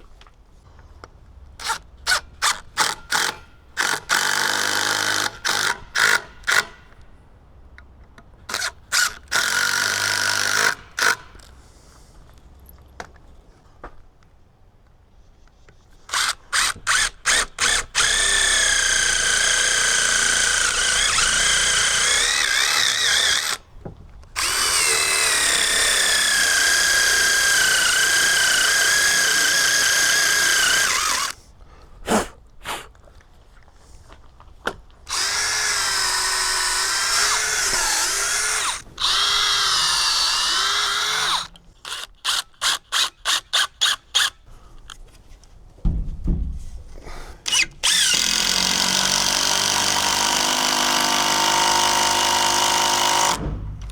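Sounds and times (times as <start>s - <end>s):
power drill whining: 1.6s - 7.0s, 8.5s - 11.6s, 16.1s - 23.8s, 24.4s - 31.4s, 35.1s - 44.4s, 47.5s - 53.9s
drill trigger blips: 16.1s - 23.7s, 24.4s - 31.4s, 35.1s - 44.4s, 47.5s - 53.9s.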